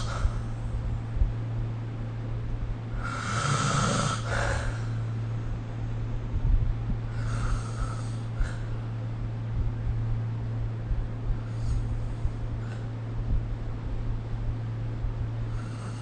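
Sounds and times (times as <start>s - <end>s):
person snoring: 3.0s - 5.0s, 7.1s - 8.6s, 15.5s - 16.0s.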